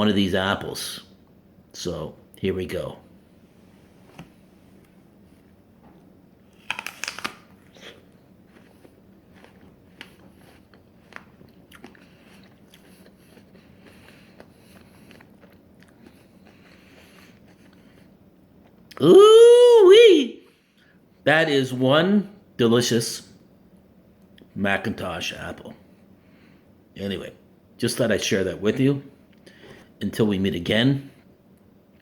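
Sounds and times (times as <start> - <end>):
chewing apple crunches: 6.5 - 19.0
apple crunching bites: 6.5 - 19.1.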